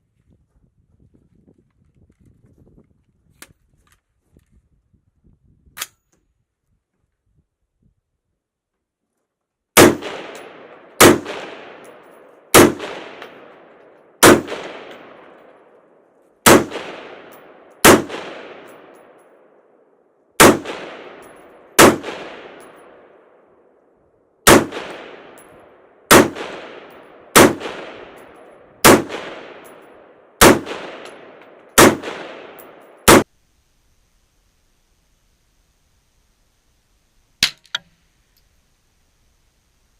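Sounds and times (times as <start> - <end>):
rifle shots with echo: 9.8 - 23.7, 24.4 - 33.3.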